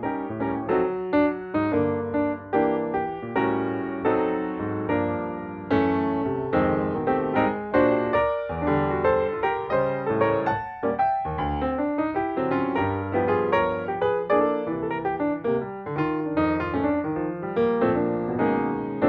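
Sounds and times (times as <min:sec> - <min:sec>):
piano music: 0:00.0 - 0:19.0.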